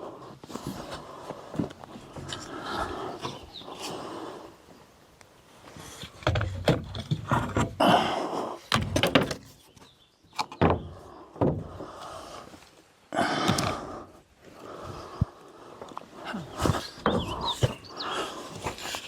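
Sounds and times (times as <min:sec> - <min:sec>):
wood scraping against wood: 0:05.6 - 0:14.1, 0:15.9 - 0:19.0
wood knocking and thudding: 0:06.2 - 0:07.8, 0:08.7 - 0:12.0.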